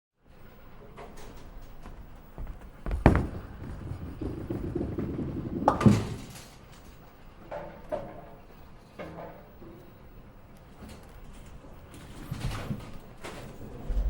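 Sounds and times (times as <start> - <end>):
bowling ball rolling: 1.1 - 7.1
bowling pins crashing: 1.3 - 7.0
pins knocking: 1.8 - 6.5
bowling ball thudding down: 1.8 - 6.7.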